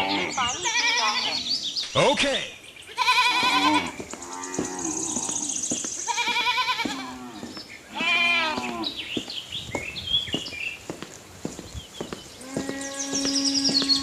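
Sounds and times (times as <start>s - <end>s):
livestock bleating: 0.0s - 1.5s, 2.9s - 5.5s, 6.1s - 9.0s.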